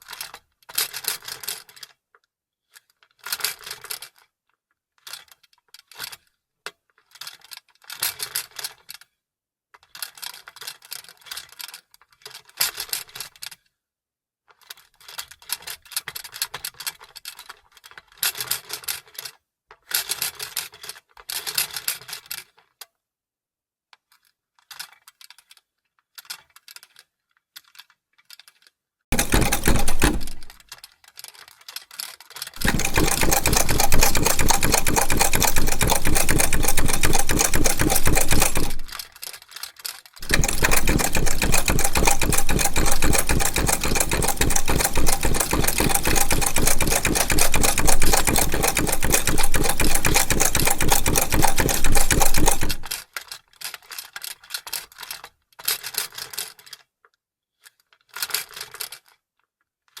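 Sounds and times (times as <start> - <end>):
sewing machine clattering: 29.1 - 30.6, 32.6 - 39.0, 40.2 - 53.0.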